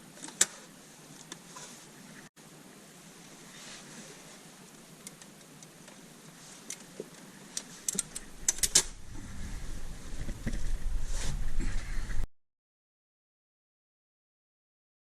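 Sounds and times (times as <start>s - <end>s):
low rumble of handling noise: 3.2s - 12.3s.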